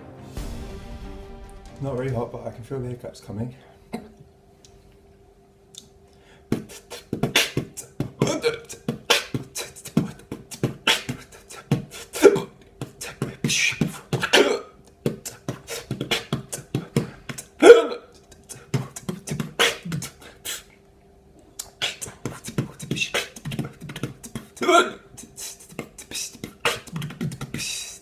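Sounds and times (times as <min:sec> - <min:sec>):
beatboxing: 0:06.5 - 0:20.7, 0:21.6 - 0:28.0
voiced hiccup yelps: 0:17.6 - 0:18.0.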